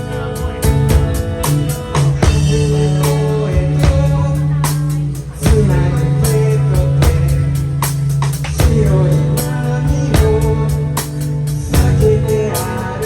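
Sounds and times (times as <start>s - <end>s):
bass notes: 0.0s - 13.0s
guitar: 0.0s - 13.0s
drum kit hits: 0.4s - 12.2s.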